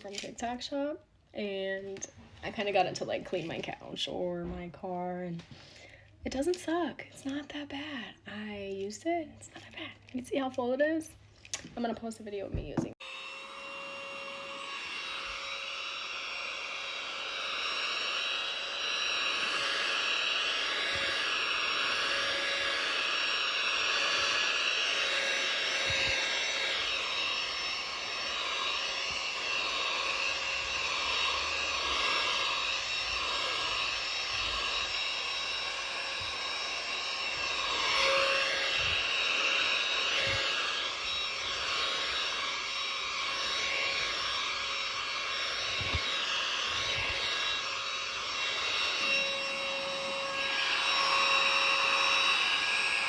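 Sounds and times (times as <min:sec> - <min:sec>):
handheld vacuum cleaner whining: 0:11.4 - 0:53.0.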